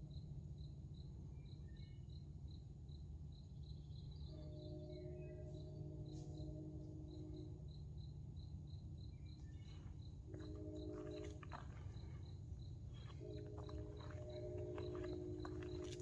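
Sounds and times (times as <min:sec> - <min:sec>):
cricket chirping: 0:00.0 - 0:16.0
low hum: 0:04.4 - 0:16.0.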